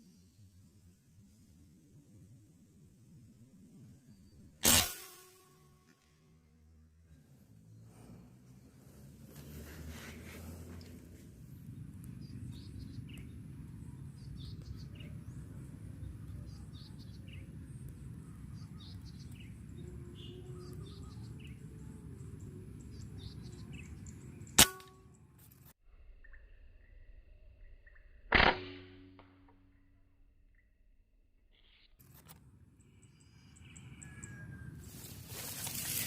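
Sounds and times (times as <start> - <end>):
air rifle shot: 4.6 - 5.5, 28.3 - 28.9
bird chirps: 11.7 - 25.2, 26.2 - 28.2, 32.8 - 36.0.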